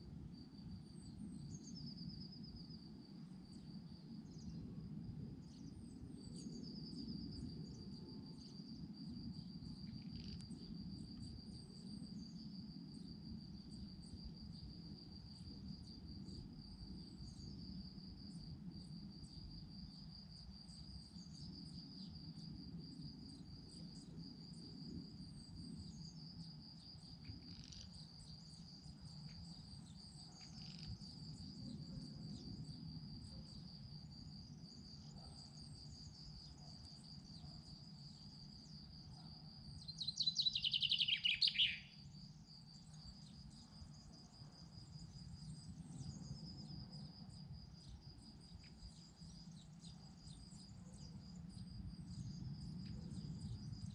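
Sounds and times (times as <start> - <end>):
high insect trill: 0.3 - 4.8, 5.4 - 53.9
faint bird chirps: 39.8 - 42.0.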